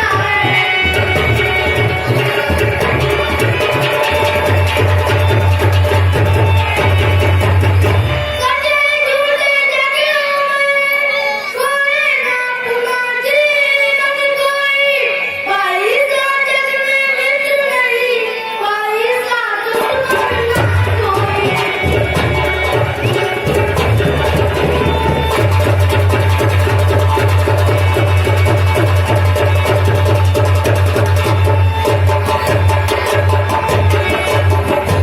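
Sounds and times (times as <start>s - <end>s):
hand drum: 0.0s - 8.5s, 19.8s - 35.0s.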